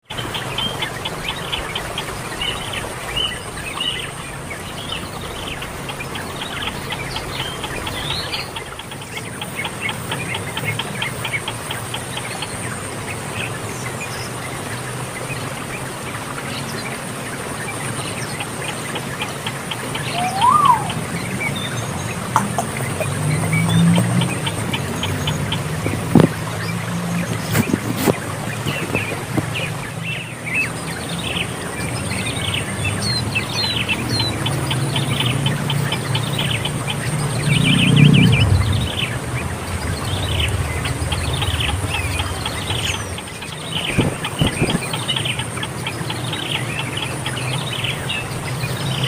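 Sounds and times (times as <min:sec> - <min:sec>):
small birds chirping: 0:00.0 - 0:49.0
lower bird call: 0:19.6 - 0:26.4
high-pitched whine: 0:19.7 - 0:24.2.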